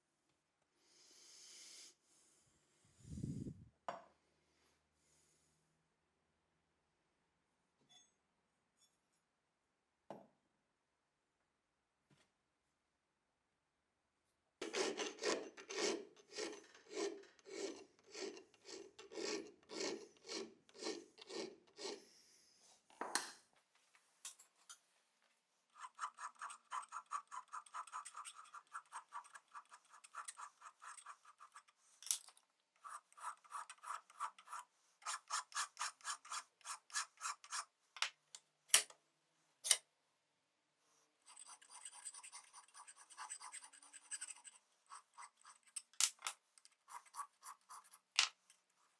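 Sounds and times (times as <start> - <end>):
abrasive rubbing strokes on workpiece: 14.7 - 22.2, 32.8 - 37.7.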